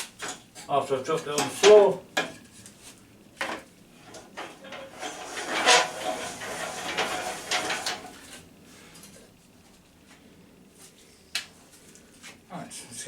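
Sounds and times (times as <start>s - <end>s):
objects clattering on a workbench: 0.0s - 0.7s, 1.3s - 2.8s, 3.4s - 8.4s.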